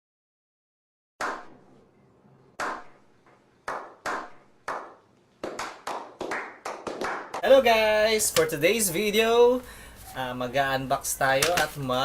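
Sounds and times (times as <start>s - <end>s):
sharp hand claps: 3.6s - 7.6s.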